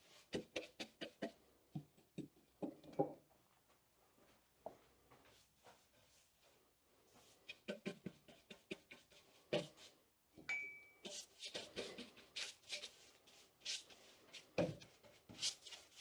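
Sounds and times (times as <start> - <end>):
brush swishing on wood: 11.1 - 16.0.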